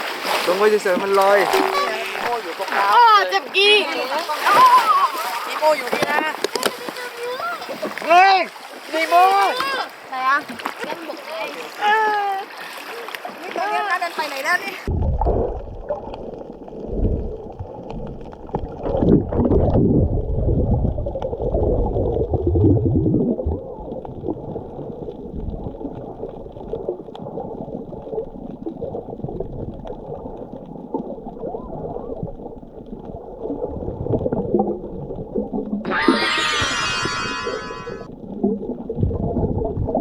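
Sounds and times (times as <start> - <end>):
muffled underwater gurgling: 0.9 - 2.6.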